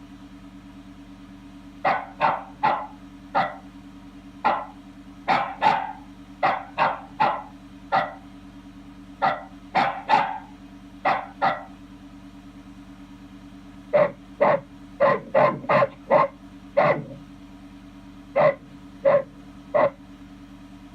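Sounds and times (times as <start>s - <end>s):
steady low hum: 0.0s - 20.9s
dog barking: 1.8s - 3.7s, 4.4s - 8.3s, 9.2s - 11.8s, 13.9s - 17.2s, 18.4s - 20.0s.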